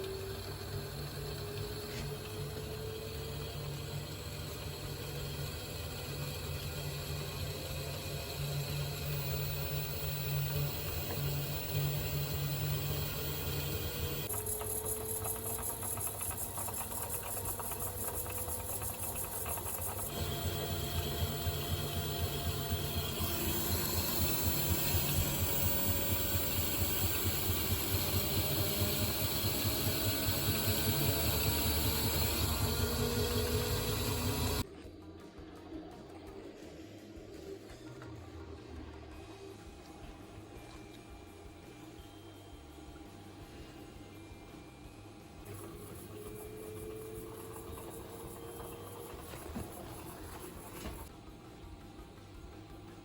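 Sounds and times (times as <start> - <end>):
washing machine drum churning: 0.0 - 34.6, 45.5 - 51.1
faint motor whine: 0.0 - 53.0.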